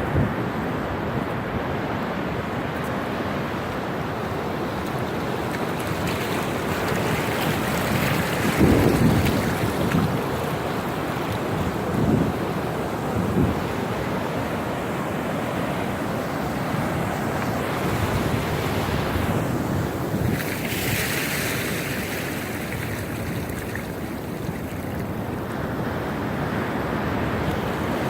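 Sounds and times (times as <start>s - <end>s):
rough surf breaking: 0.0s - 28.0s
wind buffeting microphone: 5.3s - 15.0s, 16.0s - 26.0s.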